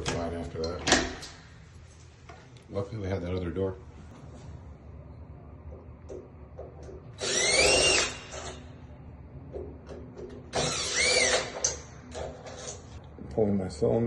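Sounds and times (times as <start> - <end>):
power drill motor whine: 7.2 - 8.5, 10.5 - 11.7.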